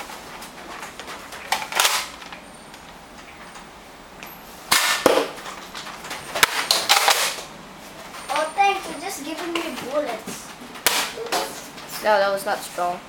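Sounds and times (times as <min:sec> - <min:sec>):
foam dart blaster firing: 0:04.7 - 0:05.4.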